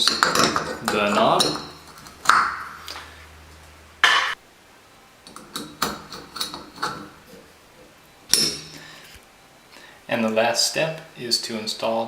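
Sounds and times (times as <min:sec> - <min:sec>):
metal clink: 0:08.3 - 0:08.8.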